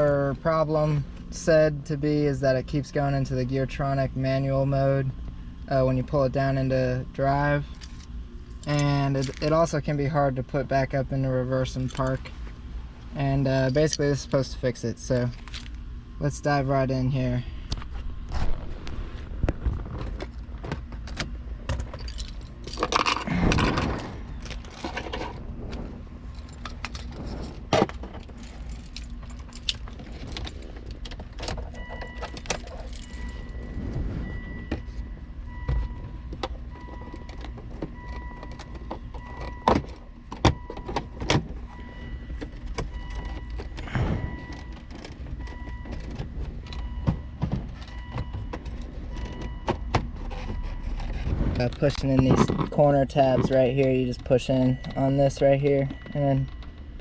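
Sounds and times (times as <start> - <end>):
steady low hum: 0.0 - 57.0
faint repeating beep: 43.8 - 44.8, 54.6 - 56.6.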